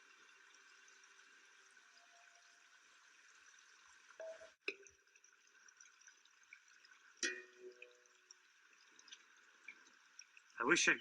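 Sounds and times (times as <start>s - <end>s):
faint water trickle: 0.0s - 11.0s.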